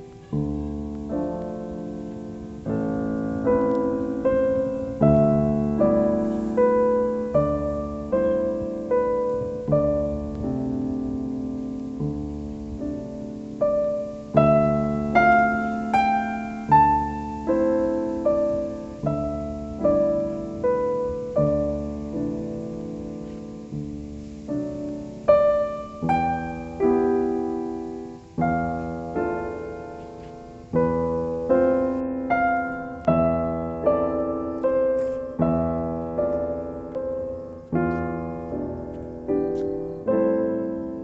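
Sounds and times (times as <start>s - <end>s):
slow piano music: 0.0s - 41.0s.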